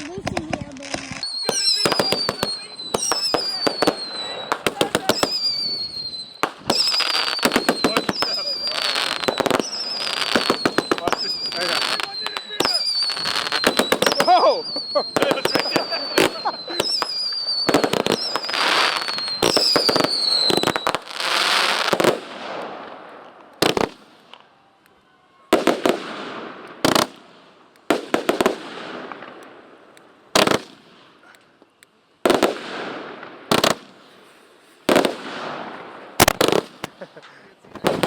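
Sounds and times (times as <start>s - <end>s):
fireworks bangs with crackle: 0.0s - 24.6s, 25.4s - 31.3s, 32.2s - 38.0s
whistling firework: 0.8s - 27.3s, 27.9s - 29.4s, 32.2s - 38.0s.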